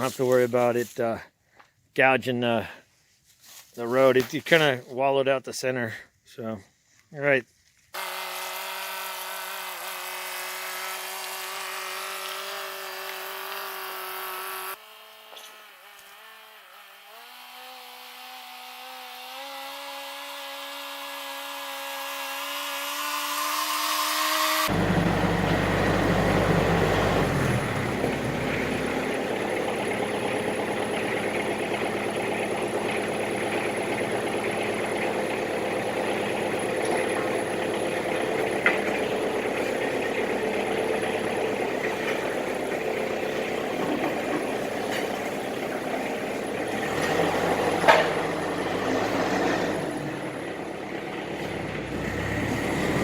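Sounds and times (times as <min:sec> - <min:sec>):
droning motor: 0:22.2 - 0:53.0
tractor engine idling: 0:24.7 - 0:53.0.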